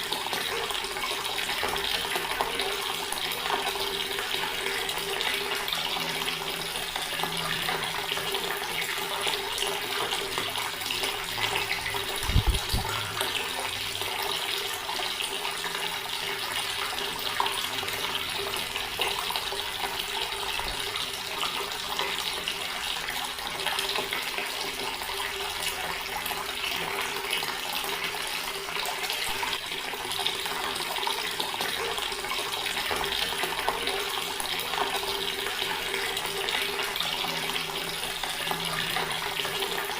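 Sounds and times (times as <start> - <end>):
tap water pouring into basin: 0.0 - 39.9.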